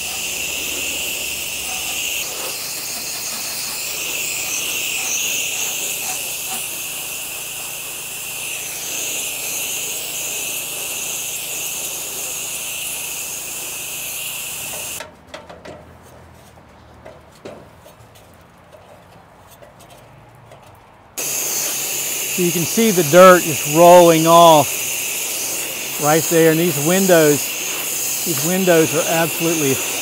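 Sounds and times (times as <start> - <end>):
pressure washer spray hissing: 0.0 - 15.0, 21.2 - 30.0.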